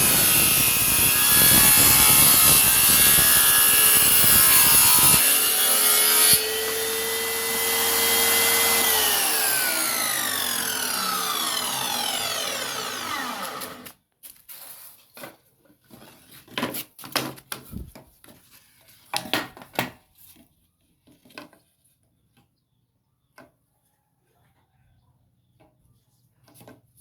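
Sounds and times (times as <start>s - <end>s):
circular saw spinning down: 0.0s - 13.9s.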